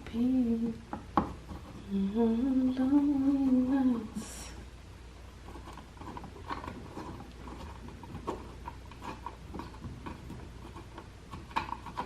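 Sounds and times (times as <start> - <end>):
hand tools clicking and scraping: 5.5 - 12.0.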